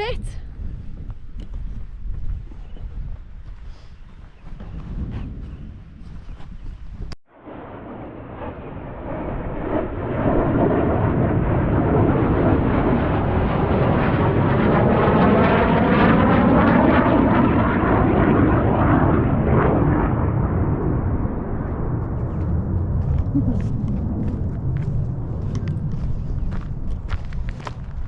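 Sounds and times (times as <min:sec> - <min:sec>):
aircraft flying over: 0:07.3 - 0:28.0.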